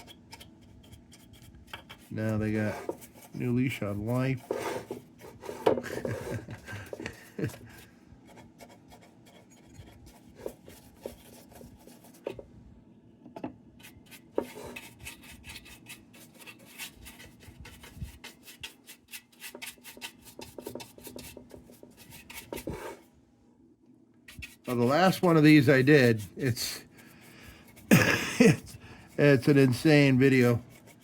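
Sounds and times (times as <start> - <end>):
rubbing and scraping on steel: 0.0 - 12.4, 13.8 - 23.1, 24.2 - 31.0.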